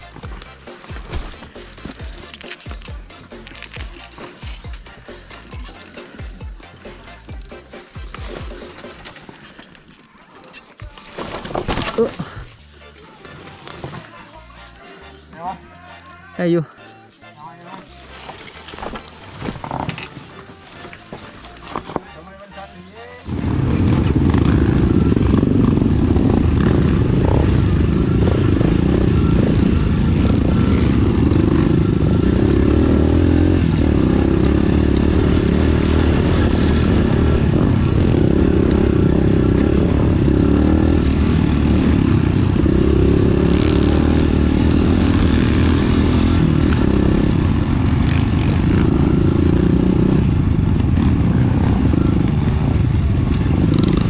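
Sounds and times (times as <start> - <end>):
motorcycle engine rumbling: 17.6 - 54.0.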